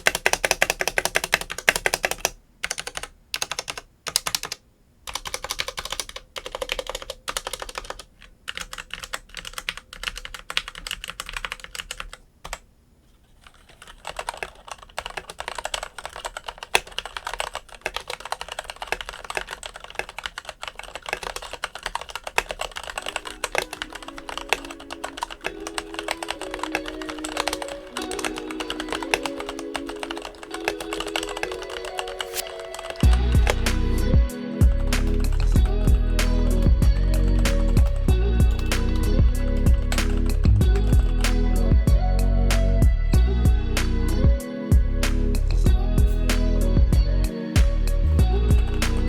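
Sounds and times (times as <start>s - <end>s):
mechanical keyboard typing: 0.0s - 12.6s, 13.4s - 41.8s
background music: 23.0s - 49.0s.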